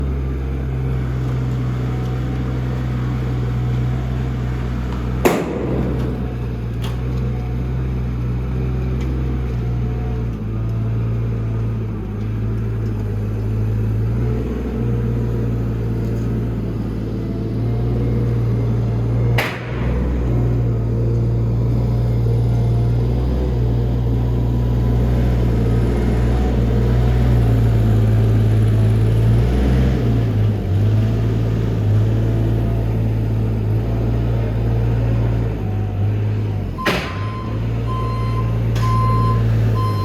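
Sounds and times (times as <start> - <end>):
forklift engine humming: 0.0 - 40.0
sharp knocks: 5.2 - 7.4, 36.8 - 37.5.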